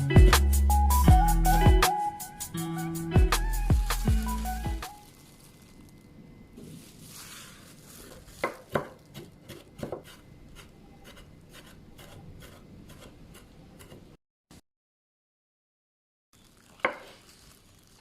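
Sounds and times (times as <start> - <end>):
knife rubbing and scraping on board: 7.1 - 14.1.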